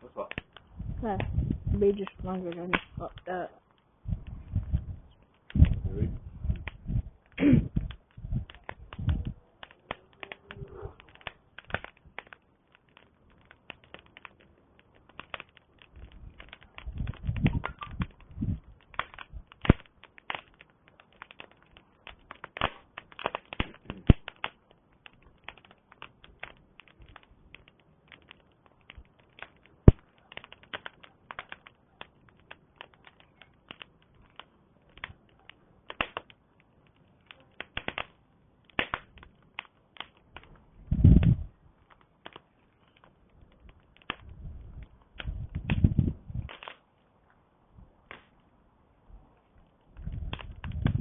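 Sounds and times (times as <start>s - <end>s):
campfire crackling and popping: 0.0s - 51.0s
low rumble: 0.7s - 2.3s, 4.0s - 9.4s.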